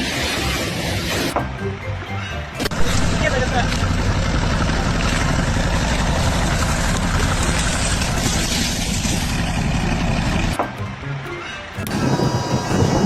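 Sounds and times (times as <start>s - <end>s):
machine engine rumbling: 0.0s - 13.0s.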